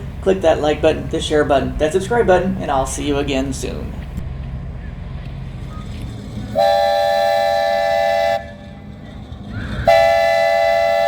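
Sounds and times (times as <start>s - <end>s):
train horn blasts: 6.5s - 8.8s, 9.8s - 11.0s.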